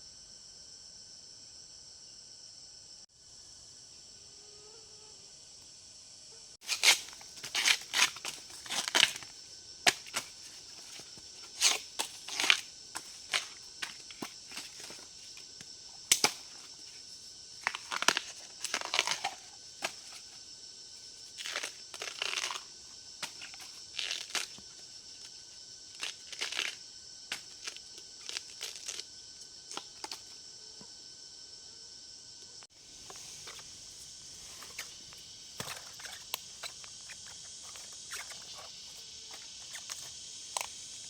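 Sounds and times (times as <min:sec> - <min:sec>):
dry leaves rustling: 0:06.6 - 0:15.5
stems snapping: 0:06.7 - 0:15.4, 0:16.1 - 0:16.7, 0:17.6 - 0:20.2, 0:21.4 - 0:24.6.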